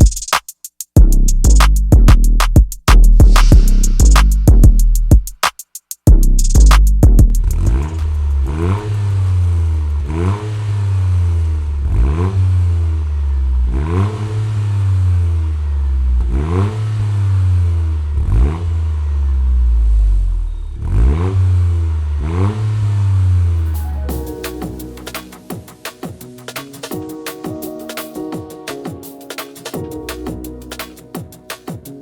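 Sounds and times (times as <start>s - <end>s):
car engine revving: 7.4s - 23.7s.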